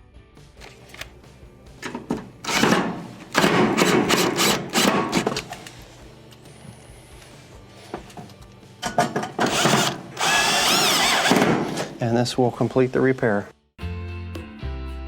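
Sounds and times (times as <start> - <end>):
cordless drill driving screws: 2.5 - 5.5, 9.4 - 12.0.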